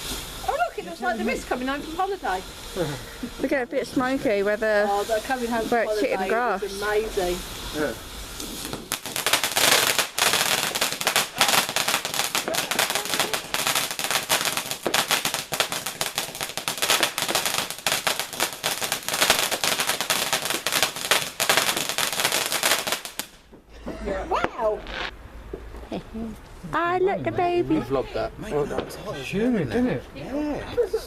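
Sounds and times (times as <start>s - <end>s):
firework crackling: 0.0s - 26.9s, 27.6s - 29.1s.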